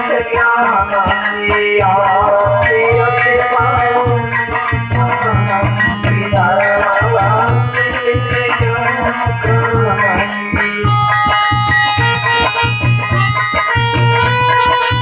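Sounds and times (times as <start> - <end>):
fast drum beat: 0.0 - 15.0
sustained melody: 1.0 - 15.0.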